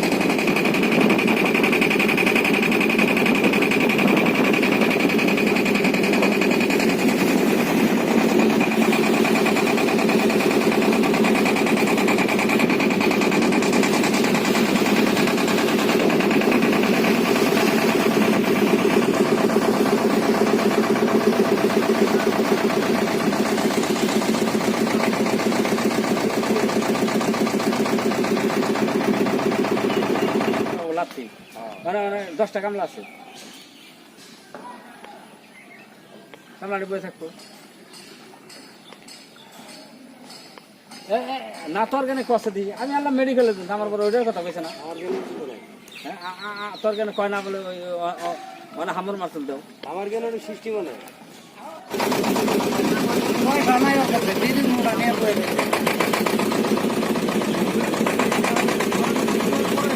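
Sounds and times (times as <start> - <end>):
fast rattling beat: 0.0 - 30.8, 51.9 - 59.9
small engine running: 0.0 - 31.1, 51.9 - 59.9.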